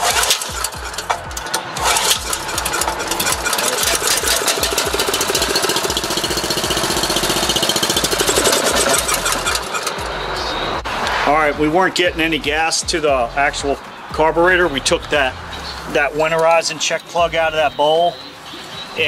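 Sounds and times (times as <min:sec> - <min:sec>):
generator engine running: 0:00.0 - 0:10.9.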